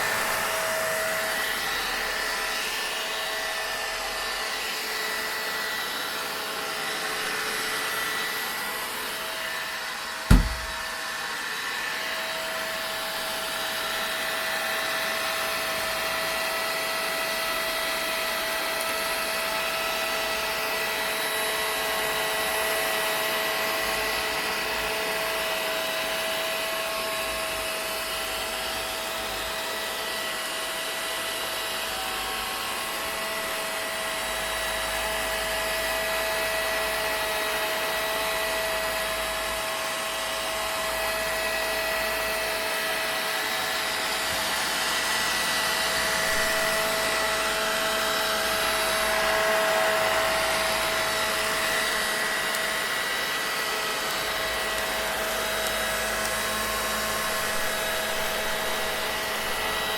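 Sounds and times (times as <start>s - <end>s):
vacuum cleaner running: 0.0s - 59.9s
low thump: 10.3s - 10.8s.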